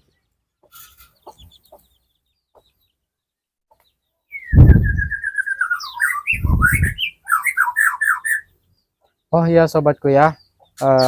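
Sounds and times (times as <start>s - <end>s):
songbird calling: 3.7s - 11.0s
heavy low thuds: 4.6s - 5.1s.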